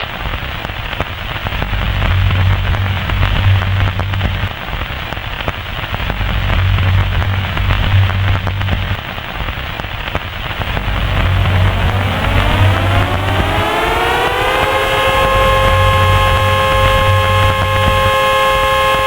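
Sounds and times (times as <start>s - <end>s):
low hum: 10.6s - 18.5s.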